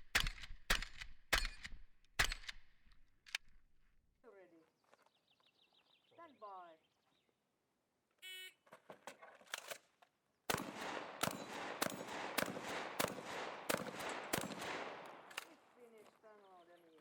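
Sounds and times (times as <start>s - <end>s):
shotgun shots: 0.0s - 2.6s, 10.5s - 15.7s
shotgun pump action: 0.0s - 3.6s, 10.5s - 15.6s.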